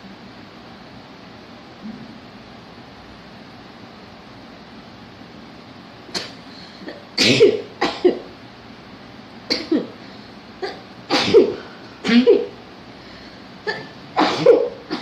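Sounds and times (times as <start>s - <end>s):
woman sneezing: 10.6s - 12.6s, 13.7s - 15.0s.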